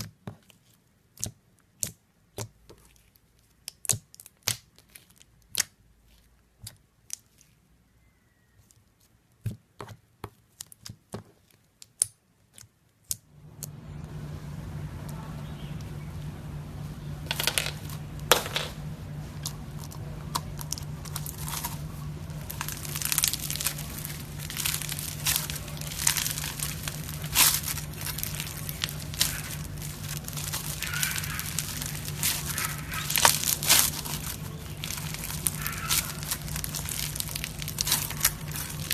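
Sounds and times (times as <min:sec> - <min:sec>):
steady low hum: 0:13.3 - 0:38.9
slime squeezed and stretched: 0:19.4 - 0:38.9.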